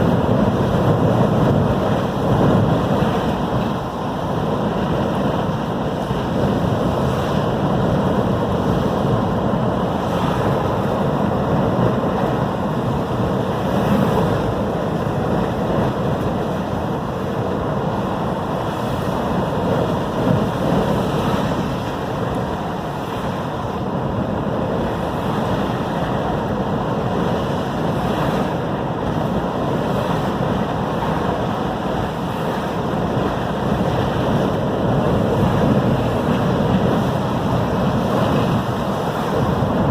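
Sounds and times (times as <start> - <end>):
heavy ocean surf: 0.0 - 39.9
storm wind on microphone: 0.0 - 39.9.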